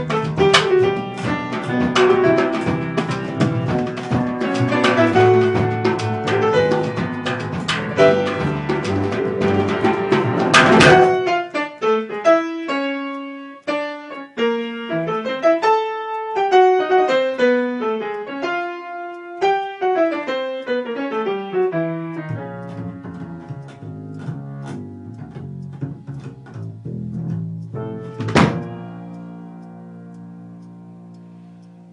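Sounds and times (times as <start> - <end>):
band with drums and cymbals: 0.0 - 11.2
piano melody: 0.0 - 31.9.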